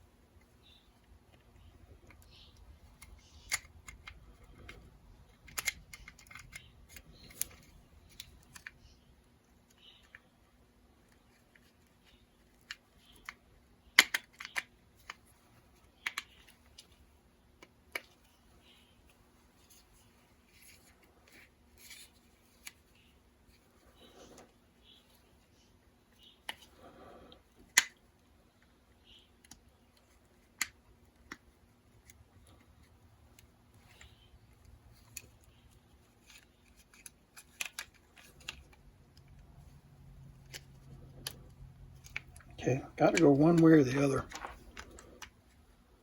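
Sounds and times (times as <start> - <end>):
plastic parts clicking: 1.3 - 8.9, 11.1 - 17.0, 29.1 - 45.5
handling rustle: 31.2 - 45.8.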